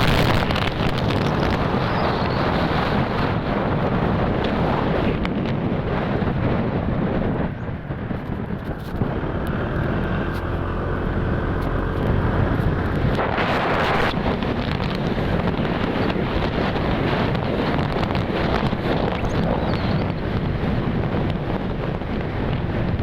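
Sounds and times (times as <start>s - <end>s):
faint motorcycle engine: 0.0s - 23.0s
wind rushing over microphone: 0.0s - 23.0s.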